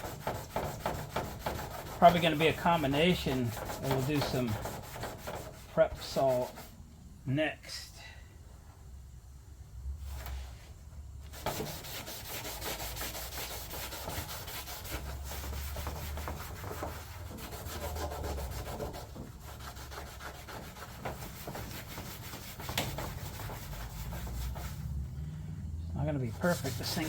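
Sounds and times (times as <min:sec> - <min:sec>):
scouring pad scrubbing metal panel: 0:00.0 - 0:06.8, 0:11.3 - 0:25.0, 0:26.0 - 0:27.0.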